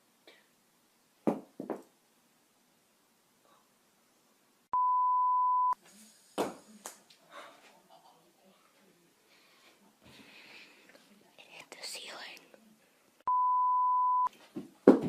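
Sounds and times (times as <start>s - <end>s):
censor bleep tone: 4.8s - 5.8s, 13.3s - 14.3s.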